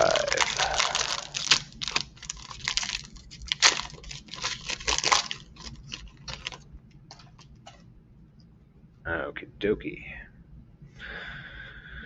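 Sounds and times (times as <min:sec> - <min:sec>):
foil wrapper tearing and crinkling: 0:00.0 - 0:07.8.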